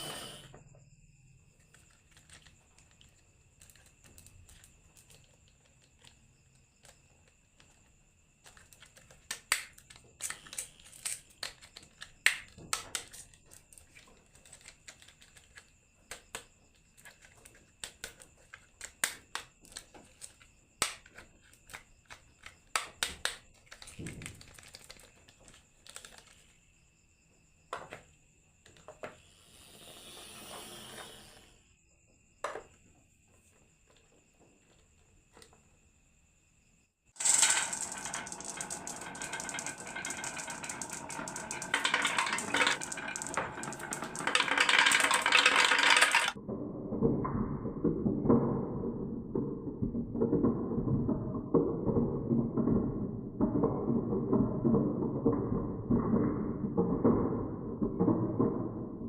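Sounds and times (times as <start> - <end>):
marbles clattering down wooden run: 37.2 - 59.0.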